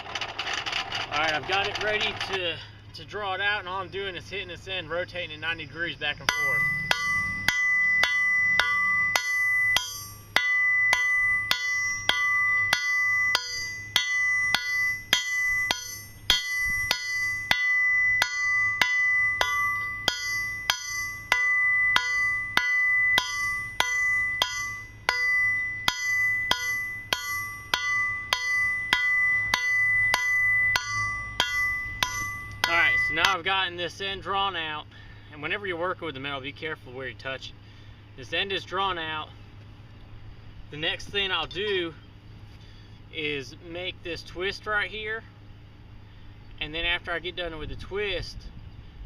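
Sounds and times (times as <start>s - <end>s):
hammer striking steel on anvil: 6.2s - 33.4s
anvil ringing: 6.2s - 33.5s.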